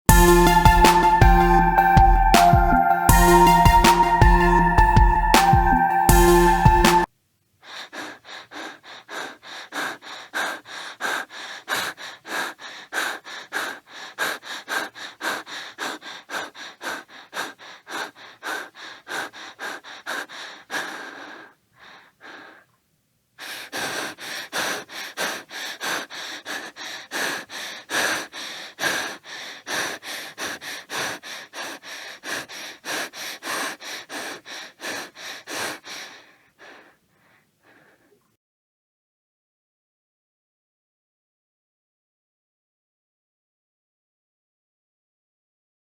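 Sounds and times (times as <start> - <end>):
boy breathing fast and hard: 7.6 - 22.8, 23.4 - 38.3.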